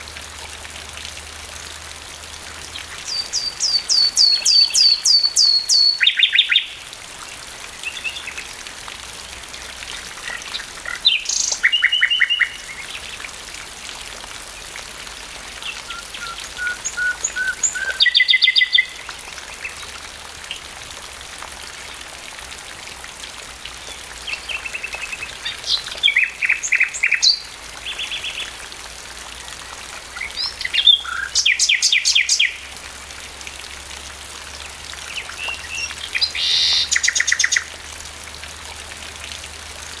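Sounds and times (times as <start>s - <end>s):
nightingale singing: 2.9s - 6.8s, 10.3s - 12.9s, 15.6s - 19.1s, 30.2s - 32.6s, 35.0s - 37.8s.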